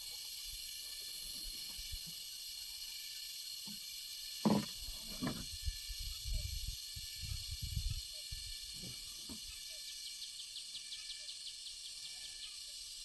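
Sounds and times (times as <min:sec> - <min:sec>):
high-pitched outdoor hiss: 0:00.0 - 0:13.0
dull knocks and thuds: 0:04.4 - 0:05.4.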